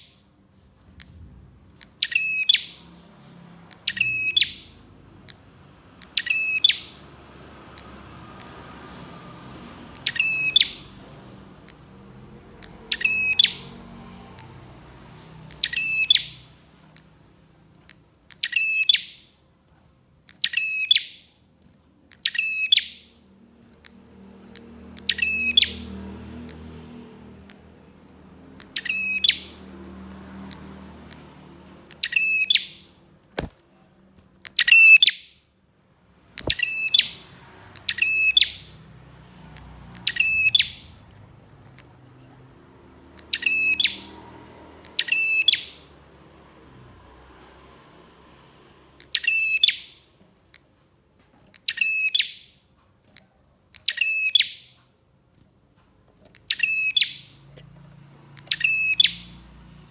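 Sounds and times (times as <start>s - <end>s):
sharp clicks: 0.6s - 29.4s, 30.0s - 35.1s, 36.2s - 38.5s
bird chattering chirp: 0.9s - 3.0s, 3.6s - 7.0s, 9.9s - 10.9s, 11.6s - 17.2s, 17.8s - 19.4s, 20.2s - 21.4s, 22.1s - 23.2s, 23.8s - 29.7s, 30.4s - 33.6s, 34.4s - 35.4s, 36.4s - 38.8s, 39.4s - 44.2s, 44.8s - 45.9s, 49.0s - 50.7s, 51.5s - 54.8s, 56.2s - 59.4s.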